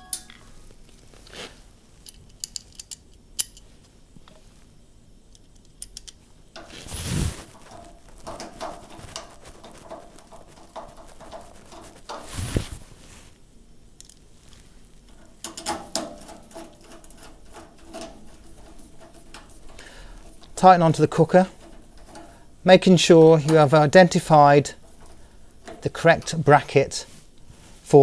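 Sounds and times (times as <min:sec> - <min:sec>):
metal screws clicking and rattling: 0:02.0 - 0:03.7, 0:05.4 - 0:06.8, 0:15.1 - 0:27.0.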